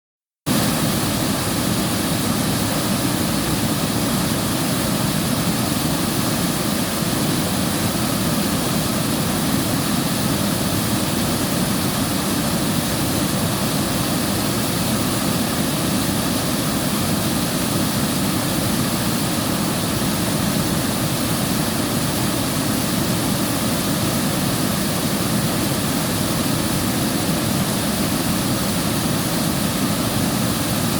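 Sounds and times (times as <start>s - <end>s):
river water flowing: 0.5s - 30.9s.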